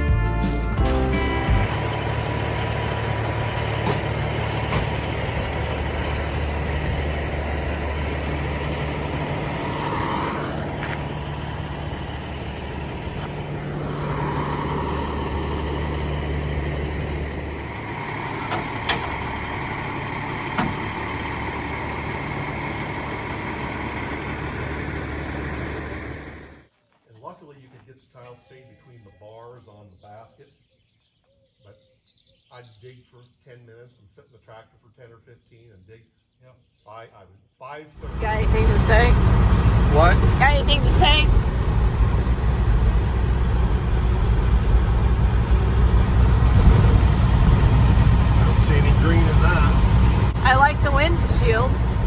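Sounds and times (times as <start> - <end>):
truck engine drone: 0.0 - 26.7, 38.0 - 52.0
road noise: 0.8 - 26.7, 38.0 - 52.0.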